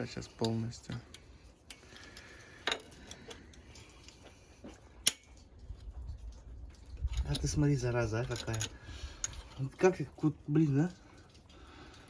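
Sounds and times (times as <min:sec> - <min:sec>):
tools and bolts clicking: 0:00.4 - 0:04.2, 0:05.0 - 0:05.6, 0:06.9 - 0:09.8.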